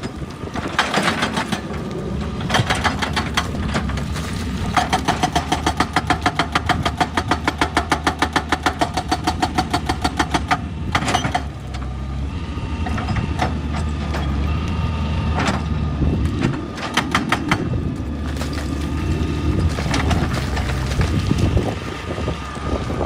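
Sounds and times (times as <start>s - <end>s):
hydraulic rock breaker hammering: 0.0s - 11.8s, 16.4s - 18.8s
excavator diesel engine running: 0.0s - 23.0s.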